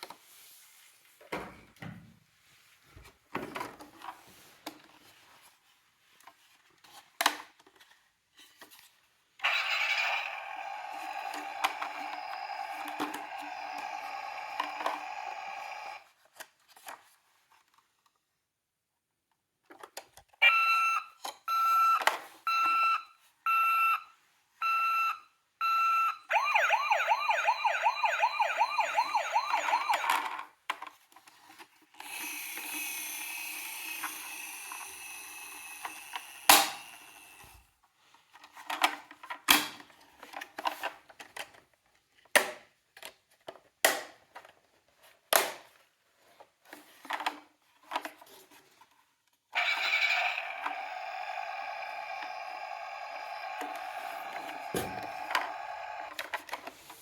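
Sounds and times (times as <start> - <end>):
toy siren beeping: 9.4 - 16.0, 20.4 - 24.0, 24.6 - 30.3, 32.5 - 37.5, 49.6 - 56.3
fast warbling siren: 9.5 - 16.0, 26.3 - 30.3, 49.6 - 56.2.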